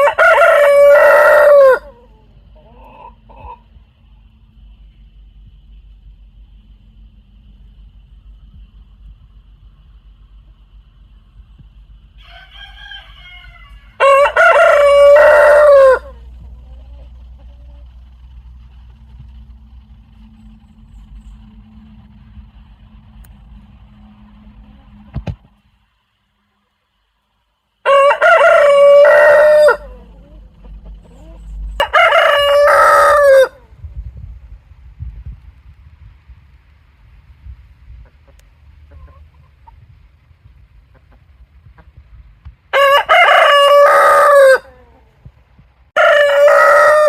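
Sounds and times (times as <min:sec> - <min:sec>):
rooster crowing: 0:00.0 - 0:03.6, 0:12.2 - 0:16.4, 0:27.8 - 0:33.7, 0:42.7 - 0:45.1, 0:46.0 - 0:47.0
steady low rumble: 0:00.0 - 0:47.0.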